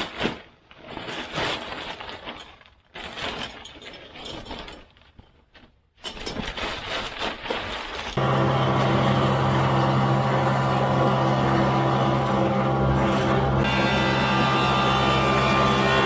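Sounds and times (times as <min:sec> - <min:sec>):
dust collector clattering and scraping: 0:06.1 - 0:16.0.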